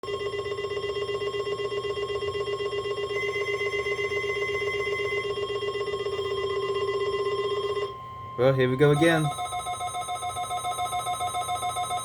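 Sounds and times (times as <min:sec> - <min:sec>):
weather radio alarm tone: 0:07.2 - 0:11.0.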